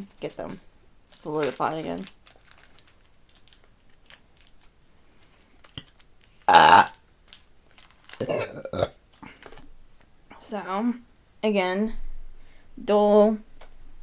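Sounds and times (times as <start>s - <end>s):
woman burping: 6.5s - 7.0s, 8.2s - 9.0s.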